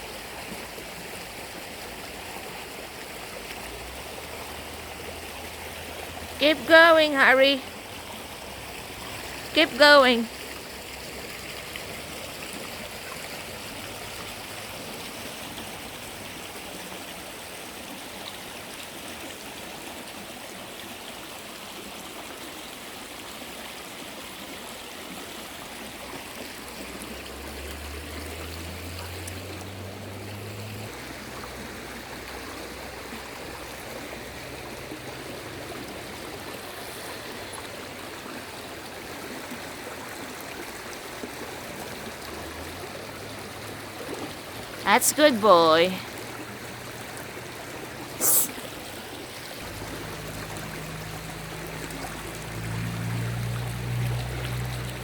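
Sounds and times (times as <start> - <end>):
running water rushing: 0.0 - 55.0.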